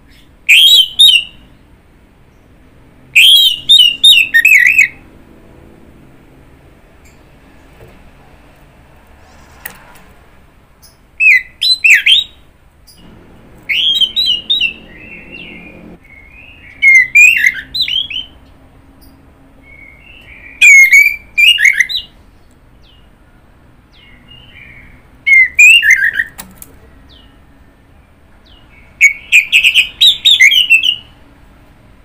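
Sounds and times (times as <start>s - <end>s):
thrush singing whistled notes: 0.1s - 1.5s, 3.1s - 5.0s, 10.8s - 22.2s, 23.9s - 26.4s, 28.4s - 31.2s.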